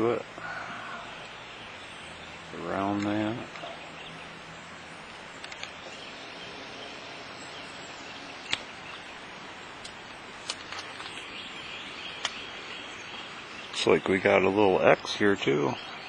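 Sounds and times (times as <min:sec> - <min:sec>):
outdoor background hiss: 0:00.0 - 0:16.0
sharp clicks: 0:02.9 - 0:03.7, 0:05.4 - 0:06.0, 0:08.4 - 0:09.1, 0:09.8 - 0:11.3, 0:12.0 - 0:12.5.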